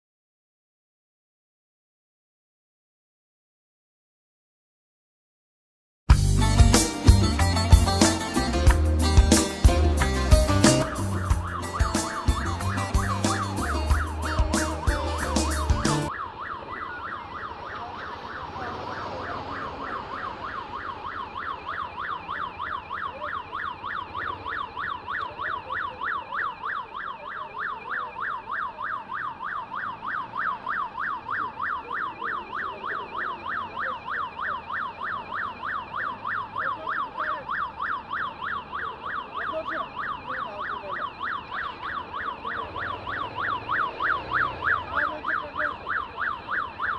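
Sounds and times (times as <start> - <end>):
music: 6.1 - 16.1
emergency siren yelping: 6.3 - 46.9.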